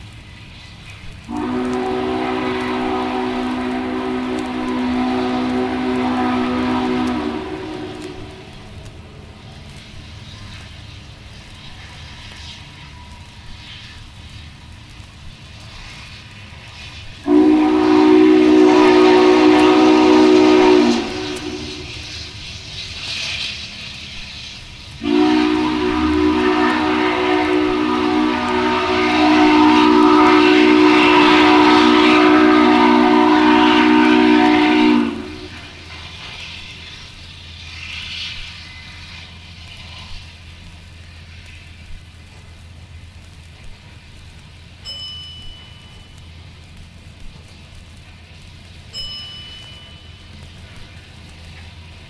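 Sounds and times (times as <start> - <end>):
low steady rumble: 0.0 - 52.0
chime steam whistle: 1.3 - 8.6, 16.8 - 40.2, 44.8 - 46.5, 48.8 - 51.4.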